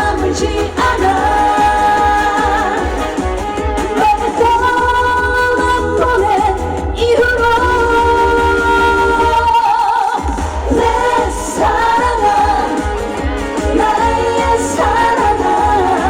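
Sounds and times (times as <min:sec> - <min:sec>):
backing track with bass beat: 0:00.0 - 0:16.0
woman singing: 0:00.0 - 0:16.0.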